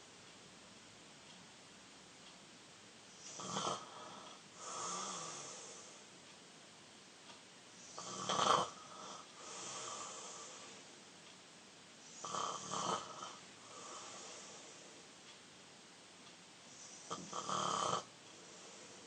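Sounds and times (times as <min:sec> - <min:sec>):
loud rasping snores: 0:03.2 - 0:05.9, 0:07.8 - 0:10.8, 0:12.1 - 0:14.6, 0:16.7 - 0:18.1
soft long breath: 0:09.3 - 0:10.9, 0:13.6 - 0:15.0.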